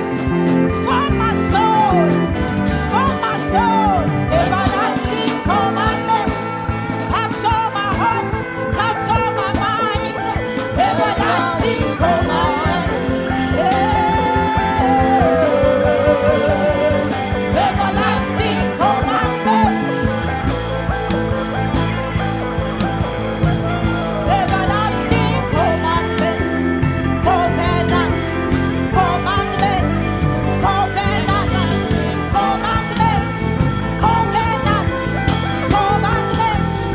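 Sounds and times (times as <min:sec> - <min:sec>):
band with steady bass: 0:00.0 - 0:36.9
person singing with vibrato: 0:02.9 - 0:20.5.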